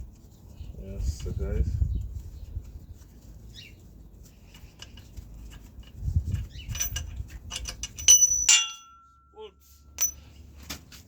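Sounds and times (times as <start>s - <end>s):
metal tools tapping engine parts: 4.4s - 9.3s, 9.9s - 10.4s
ringing metallic clink: 6.7s - 9.4s, 10.0s - 10.3s.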